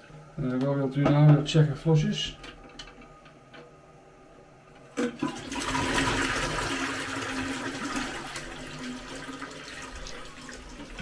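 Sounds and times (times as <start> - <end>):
toilet flushing water rushing: 5.0 - 11.0.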